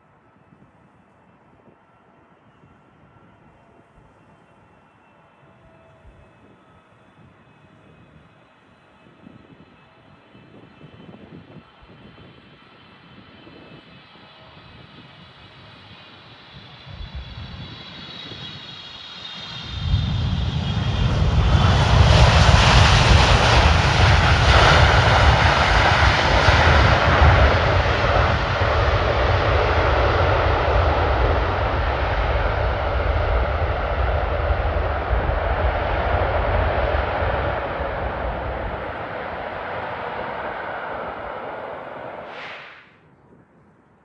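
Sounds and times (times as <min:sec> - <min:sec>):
faint jet engine whine: 0:00.0 - 0:44.0
loud deep jet roar: 0:16.5 - 0:43.0.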